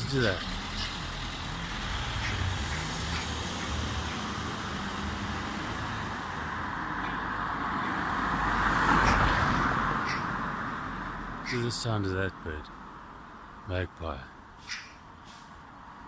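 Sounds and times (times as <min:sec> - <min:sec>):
vehicle approaching: 0:00.0 - 0:13.6
street traffic: 0:00.0 - 0:16.0
magpie calls: 0:10.0 - 0:10.5, 0:14.6 - 0:15.1.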